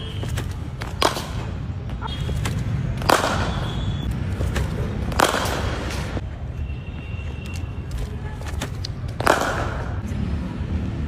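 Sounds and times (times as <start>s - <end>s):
cricket bat striking ball: 0.2s - 1.6s, 2.2s - 3.8s, 4.4s - 5.9s, 9.1s - 10.0s.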